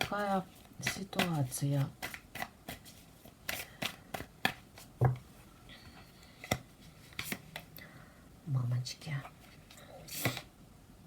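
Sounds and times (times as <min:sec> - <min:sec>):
playing cards flicking and tapping: 0:00.0 - 0:05.3, 0:06.4 - 0:07.7.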